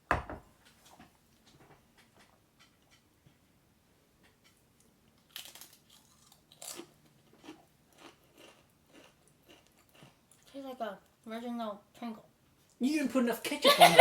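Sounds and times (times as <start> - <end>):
potato chip crunching: 5.2 - 10.6.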